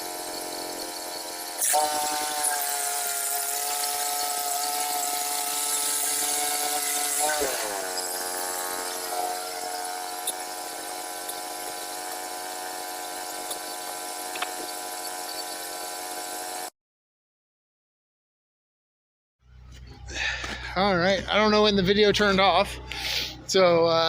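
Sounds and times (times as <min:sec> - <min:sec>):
small gas engine running: 0:00.0 - 0:16.7.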